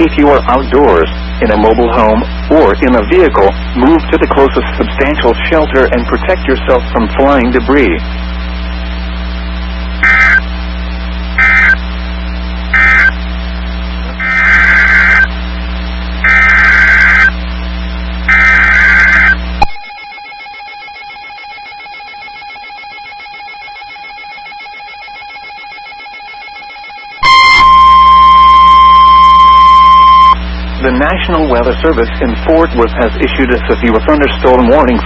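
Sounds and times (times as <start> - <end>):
steady radio hum: 0.0 - 19.8, 27.2 - 35.0
warbling digital data bursts: 10.0 - 10.5, 11.4 - 11.8, 12.7 - 13.2, 14.2 - 15.3, 16.2 - 17.4, 18.3 - 20.0, 27.2 - 34.7
faint steady tone: 27.2 - 30.8.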